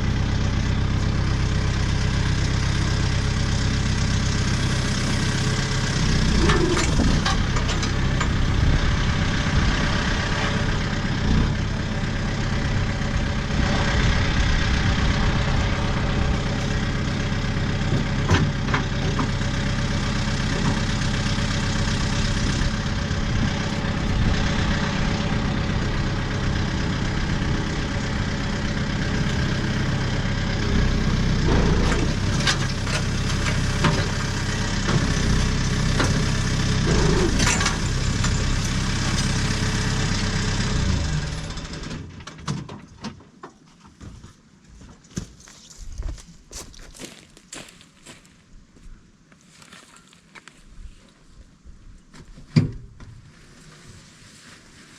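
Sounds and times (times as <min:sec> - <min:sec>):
diesel tractor engine running: 0:00.0 - 0:43.4.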